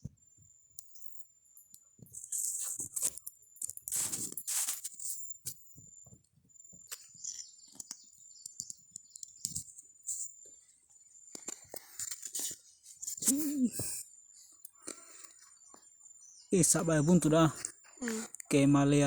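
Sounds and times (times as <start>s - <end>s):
scraping and rustling: 2.2s - 5.6s
short pitched vocal sound: 13.3s - 14.0s.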